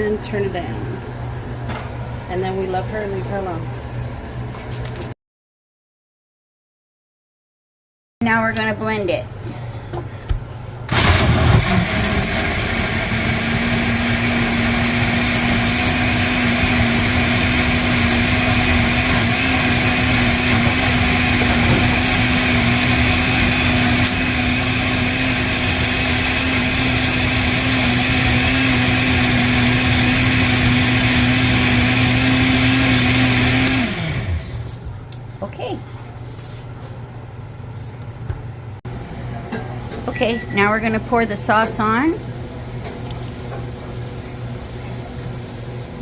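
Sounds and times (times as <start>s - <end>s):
electric blender motor running: 10.9s - 34.7s.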